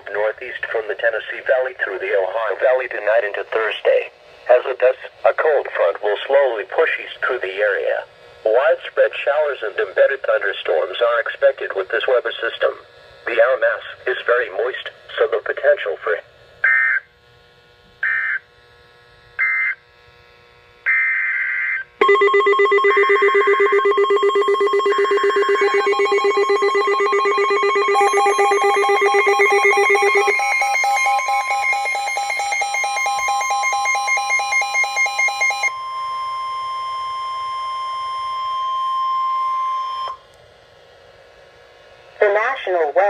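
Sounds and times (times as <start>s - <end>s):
alert data bursts: 20.9s - 40.2s
overlapping alert tones: 22.0s - 35.7s
steady single alert tone: 22.0s - 35.9s.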